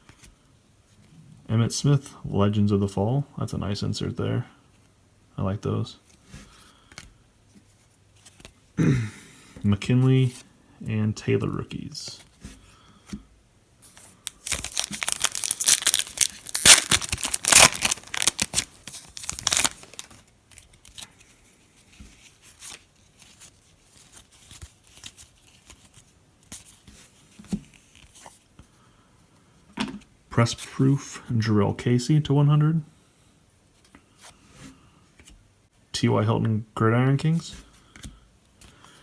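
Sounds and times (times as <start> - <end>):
cards rustling and clicking: 13.9 - 28.4
card pack wrapper tearing: 14.3 - 21.0.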